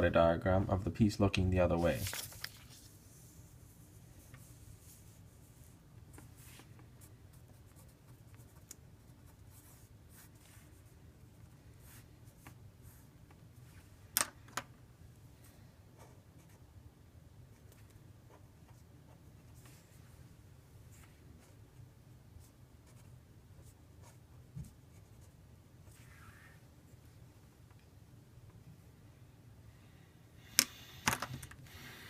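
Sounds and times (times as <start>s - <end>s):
pen scratching on paper: 22.4s - 26.0s.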